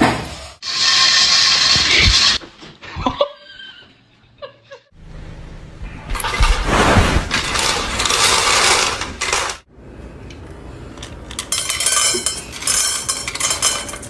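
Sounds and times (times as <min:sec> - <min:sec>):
dishes and cutlery clinking: 0:11.3 - 0:14.0.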